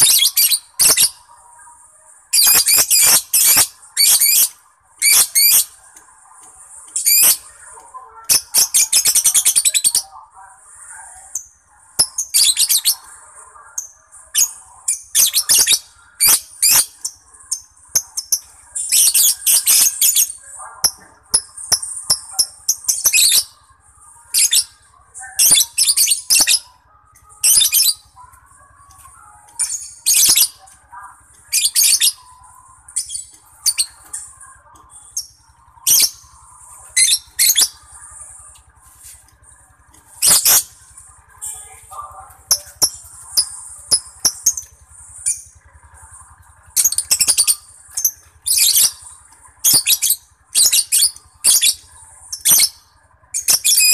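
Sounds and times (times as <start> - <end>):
lovebird shrill chattering: 0.0 - 1.3, 2.3 - 5.8, 6.9 - 7.6, 11.3 - 13.1, 13.8 - 23.6, 29.5 - 30.6, 31.4 - 38.4, 40.2 - 45.6, 46.7 - 53.9
soft continuous twittering: 0.0 - 53.9.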